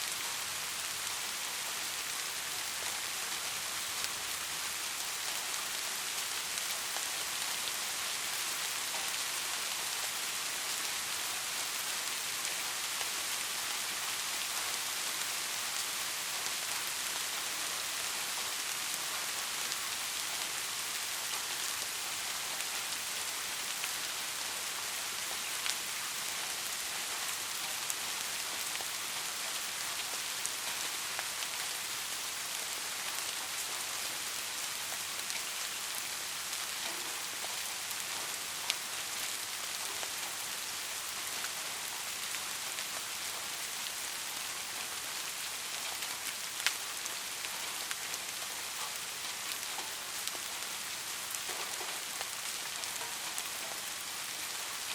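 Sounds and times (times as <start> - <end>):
steady rainfall hiss: 0.0 - 54.9.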